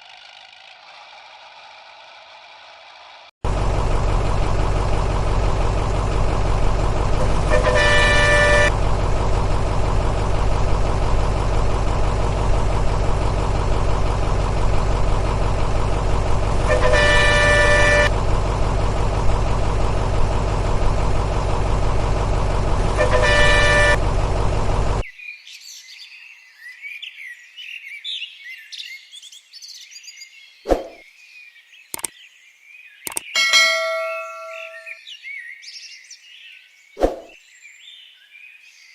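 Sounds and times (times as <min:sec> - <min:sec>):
vehicle engine running: 0:00.0 - 0:25.0
vehicle horn blowing: 0:07.2 - 0:08.8, 0:16.6 - 0:18.2, 0:22.9 - 0:24.2, 0:33.7 - 0:34.9
faint high chirping: 0:33.0 - 0:35.0.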